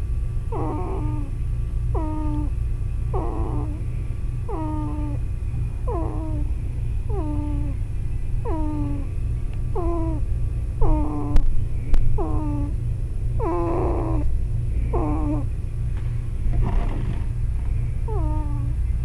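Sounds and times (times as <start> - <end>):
low hum: 0.0 - 19.0
baby snoring: 0.5 - 1.3, 2.0 - 2.5, 3.2 - 3.8, 4.5 - 5.2, 5.9 - 6.5, 7.1 - 7.8, 8.5 - 9.1, 9.8 - 10.2, 10.8 - 11.4, 12.2 - 12.8, 13.4 - 14.3, 15.0 - 15.4, 18.1 - 18.7.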